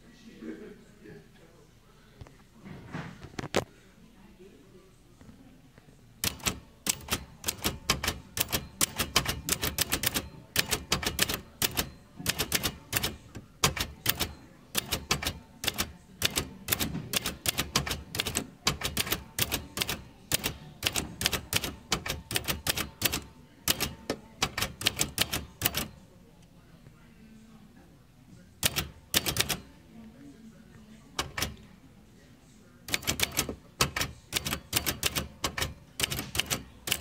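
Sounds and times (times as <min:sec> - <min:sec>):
typewriter key strikes: 0:06.2 - 0:25.9, 0:28.6 - 0:29.6, 0:31.2 - 0:31.6, 0:32.9 - 0:37.0.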